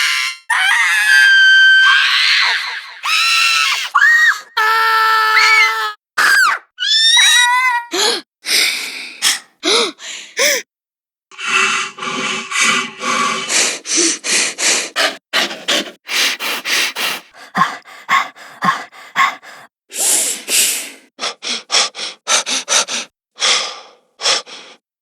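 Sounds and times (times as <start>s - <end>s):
breathy gasps and sharp breaths: 7.9s - 10.7s, 11.4s - 24.8s.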